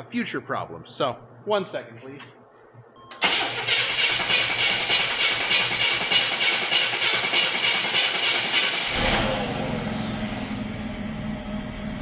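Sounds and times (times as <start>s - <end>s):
car engine cranking and starting: 3.2s - 12.0s.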